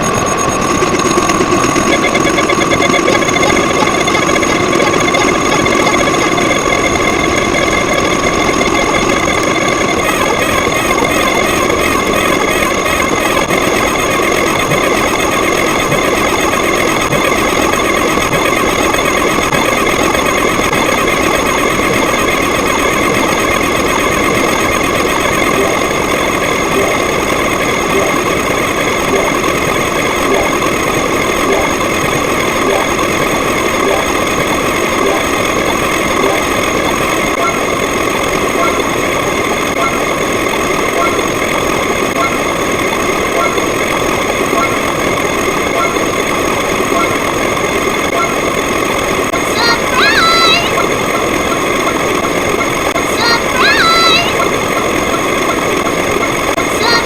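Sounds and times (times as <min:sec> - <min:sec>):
fluttering high pattern: 0:00.0 - 0:40.1
stacked steady tones: 0:00.0 - 0:57.0.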